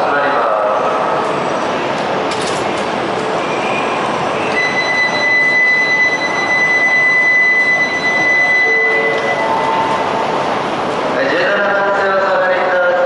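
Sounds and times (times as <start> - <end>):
train rushing past platform: 0.0 - 13.0
steady high-pitched tone: 4.4 - 10.7.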